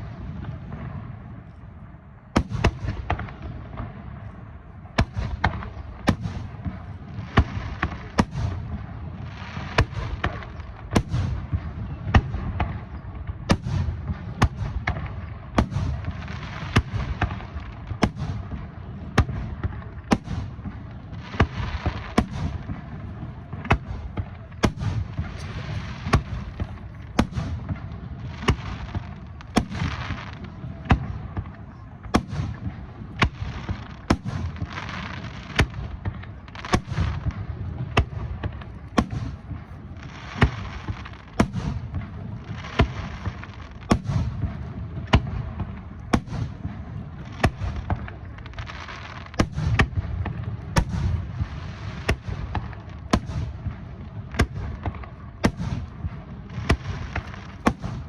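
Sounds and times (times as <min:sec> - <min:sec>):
fireworks hissing: 0:24.6 - 0:30.4.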